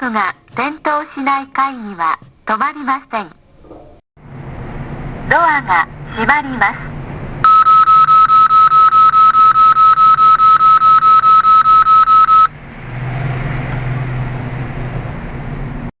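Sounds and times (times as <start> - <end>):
elevator warning buzzer beeping: 7.4 - 12.5.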